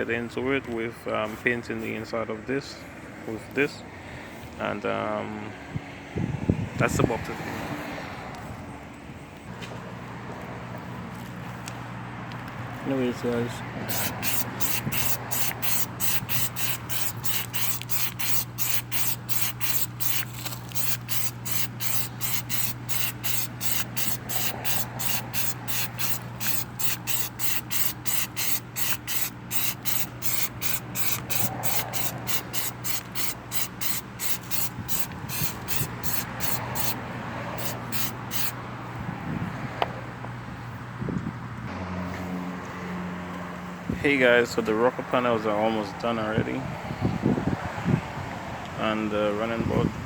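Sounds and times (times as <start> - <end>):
spray coating hissing in spurts: 13.9 - 38.6.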